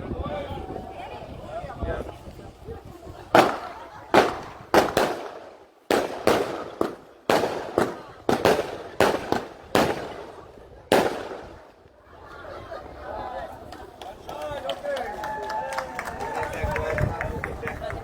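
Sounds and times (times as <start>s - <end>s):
fireworks bangs: 3.3s - 11.8s.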